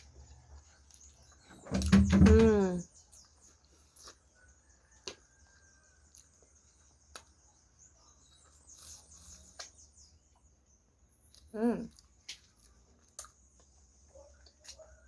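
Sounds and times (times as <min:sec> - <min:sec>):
person chewing: 0:03.2 - 0:04.4, 0:06.1 - 0:07.5, 0:11.3 - 0:15.0.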